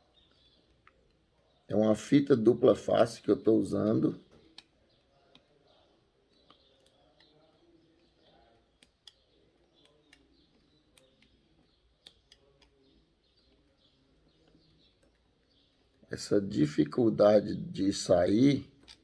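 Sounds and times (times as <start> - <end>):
faint bird chirps: 0.0 - 2.2, 3.6 - 18.8
fingers picking at tape: 3.8 - 16.0.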